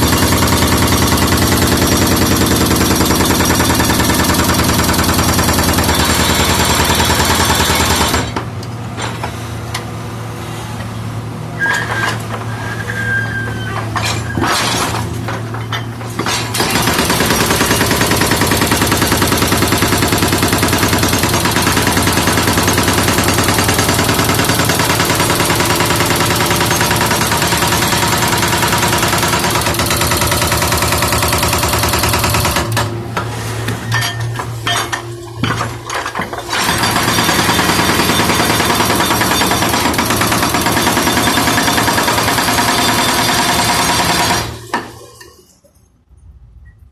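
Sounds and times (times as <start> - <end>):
jackhammer hammering: 0.0 - 8.5, 16.1 - 33.0, 34.6 - 44.9.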